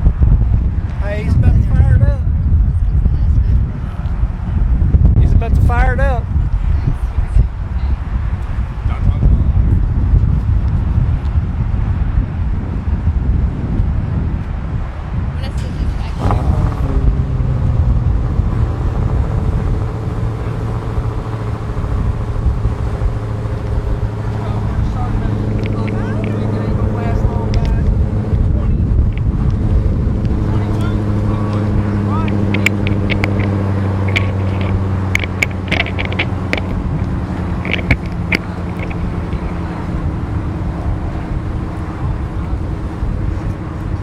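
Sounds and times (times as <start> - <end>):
car engine idling: 14.9 - 44.0.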